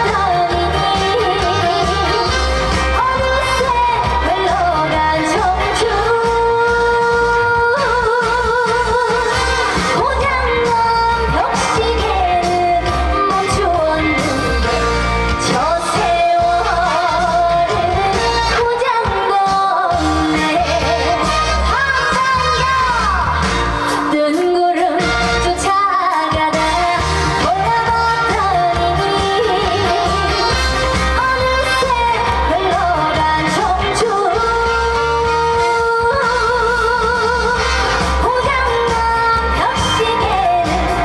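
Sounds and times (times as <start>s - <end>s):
amplified backing track: 0.0s - 41.0s
woman singing with vibrato: 0.0s - 41.0s.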